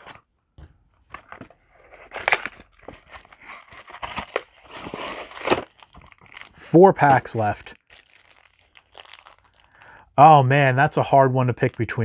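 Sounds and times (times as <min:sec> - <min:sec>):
packaging crinkling and rustling: 0:01.1 - 0:10.0
sharp foil crackles: 0:02.0 - 0:10.0.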